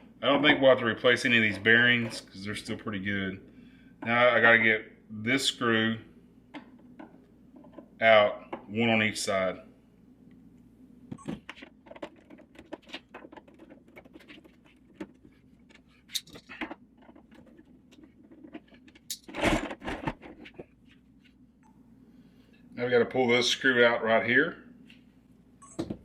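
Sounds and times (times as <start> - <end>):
scraping handling noise: 11.4 - 21.4.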